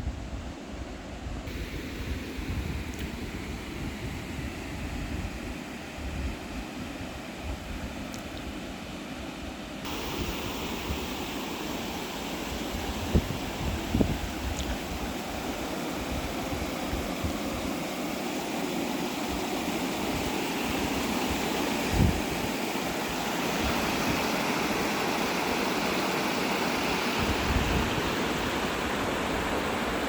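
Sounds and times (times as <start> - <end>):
rushing water: 9.8 - 30.0
wind buffeting microphone: 12.5 - 17.8, 27.2 - 30.0.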